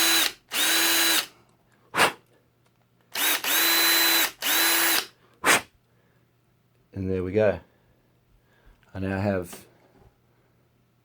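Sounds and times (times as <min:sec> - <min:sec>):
power drill drilling into metal: 0:00.0 - 0:01.3, 0:03.2 - 0:05.1.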